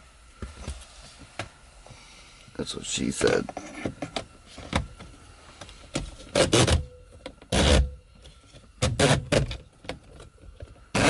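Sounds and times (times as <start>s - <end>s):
plastic trim parts rubbing and knocking: 5.9s - 11.0s.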